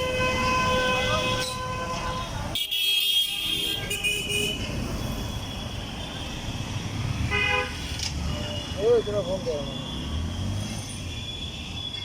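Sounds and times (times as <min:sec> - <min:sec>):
vehicle horns blasting: 0:00.0 - 0:04.8, 0:07.2 - 0:12.0
busy street traffic: 0:00.0 - 0:12.0.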